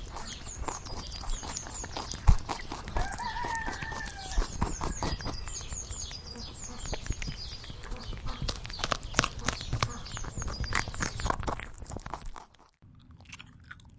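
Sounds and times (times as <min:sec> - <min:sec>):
small birds chirping: 0:00.0 - 0:12.4
rooster crowing: 0:03.0 - 0:05.4.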